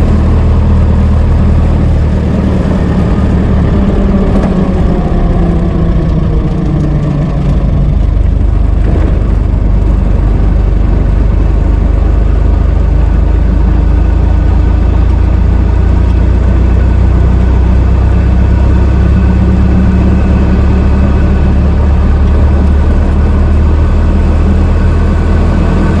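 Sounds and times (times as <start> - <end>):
car engine running: 0.0 - 26.0.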